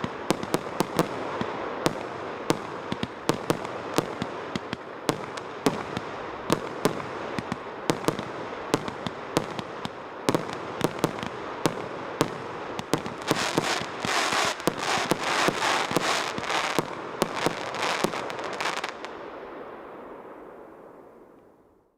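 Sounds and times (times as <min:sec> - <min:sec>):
firework bangs: 0:00.0 - 0:19.6
firework crackling: 0:00.0 - 0:19.7.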